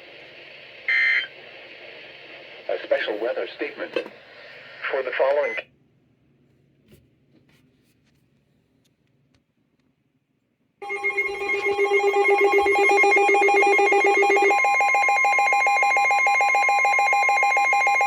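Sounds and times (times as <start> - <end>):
steady electronic tone: 10.8 - 17.6
electronic alert tone pulsing: 10.8 - 17.8.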